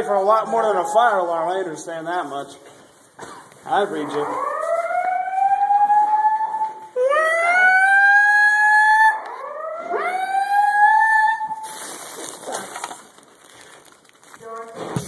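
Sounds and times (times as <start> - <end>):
fire alarm whoop: 4.4 - 11.8.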